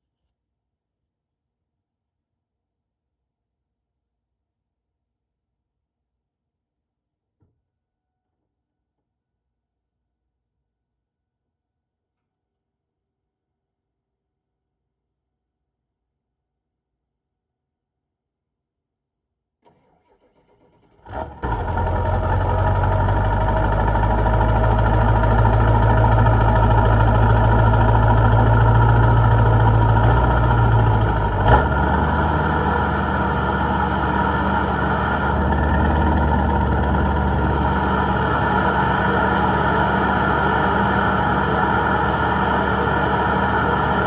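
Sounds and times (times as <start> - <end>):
diesel engine starting and running: 19.7 - 44.0.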